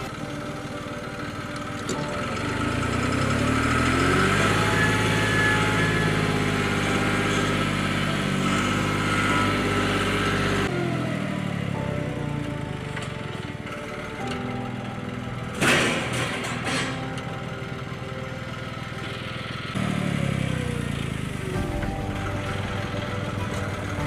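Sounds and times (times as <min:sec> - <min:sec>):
loader engine revving: 0:00.0 - 0:24.0.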